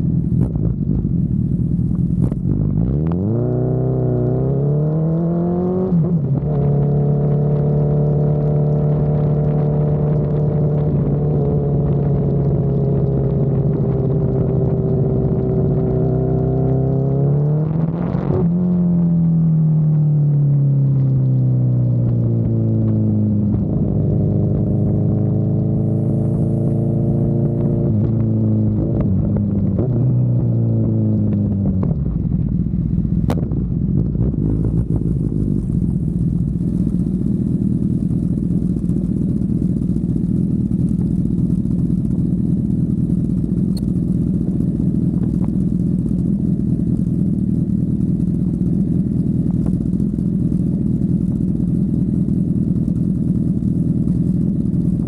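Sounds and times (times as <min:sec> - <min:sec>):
motorcycle engine: 0:00.0 - 0:19.9, 0:20.5 - 0:55.0.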